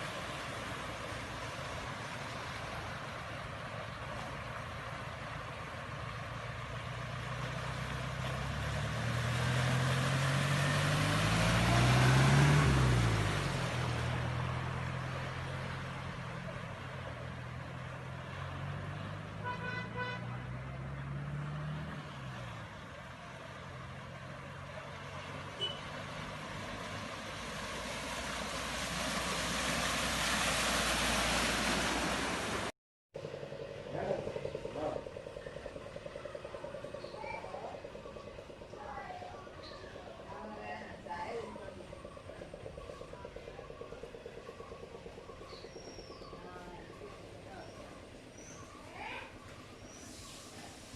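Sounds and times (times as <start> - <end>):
vehicles passing by: 0.0 - 50.9
car horn toot: 19.4 - 20.5, 25.6 - 26.0.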